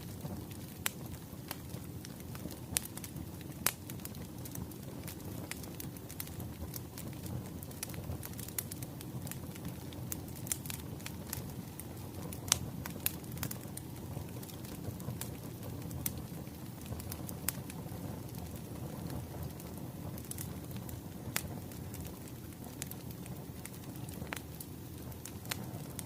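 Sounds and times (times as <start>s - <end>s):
wood fire popping and snapping: 0.0s - 26.0s.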